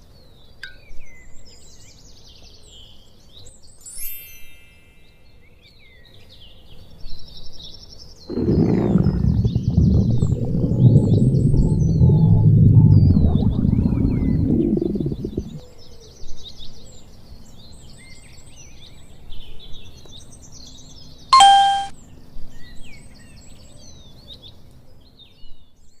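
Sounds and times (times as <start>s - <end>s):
bubbly stomach growl: 8.3s - 15.6s
bell-like ding: 21.4s - 21.9s.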